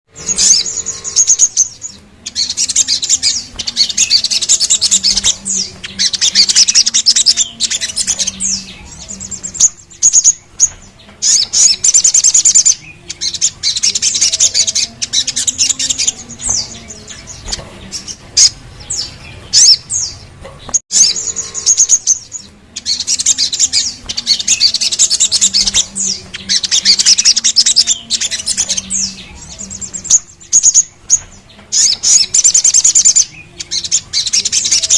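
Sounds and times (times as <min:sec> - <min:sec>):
spiderhunter bird singing: 0:00.1 - 0:34.9.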